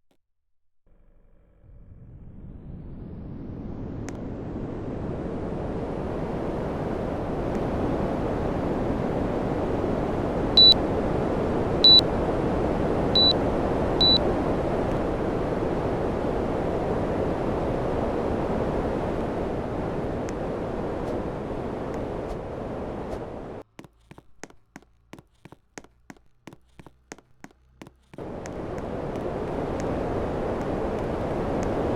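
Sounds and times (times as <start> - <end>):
air conditioner fan blowing: 2.1 - 23.6, 28.2 - 31.9
short high beeps: 11.8 - 12.0, 13.2 - 13.4, 14.0 - 14.2.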